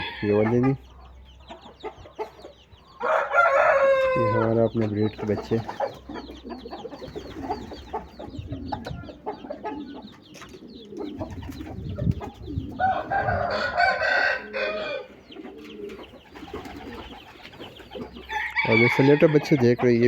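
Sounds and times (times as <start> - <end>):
rooster crowing: 0.0 - 0.4, 3.0 - 4.4, 12.8 - 15.2, 18.3 - 19.6
chicks cheeping and clucking: 0.0 - 20.0.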